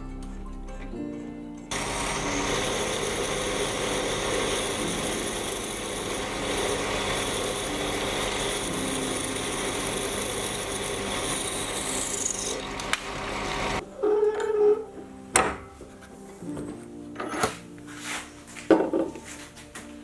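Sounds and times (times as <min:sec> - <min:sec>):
power tool cutting metal: 0:01.7 - 0:13.8.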